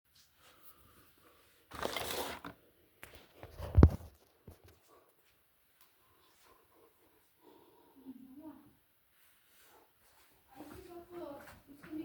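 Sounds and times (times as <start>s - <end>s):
rustling scraping noise: 1.5s - 5.0s.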